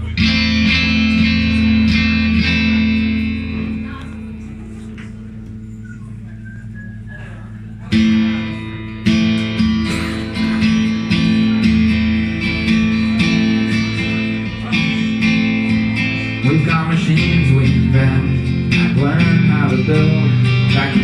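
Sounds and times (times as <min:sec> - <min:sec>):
guitar chords strummed: 0:00.0 - 0:21.0
live band playing: 0:08.0 - 0:18.8.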